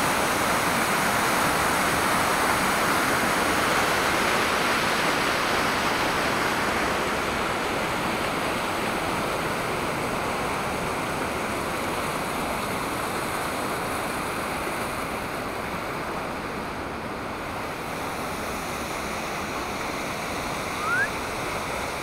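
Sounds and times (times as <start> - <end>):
waterfall rushing: 0.0 - 22.0
short rising chirp: 20.7 - 21.2.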